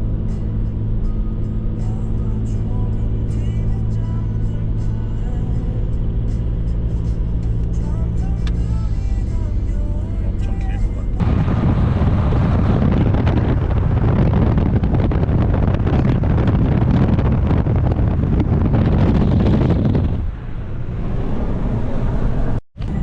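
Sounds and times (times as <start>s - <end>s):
moving vehicle rumble: 0.0s - 23.0s
wind buffeting microphone: 11.2s - 23.0s.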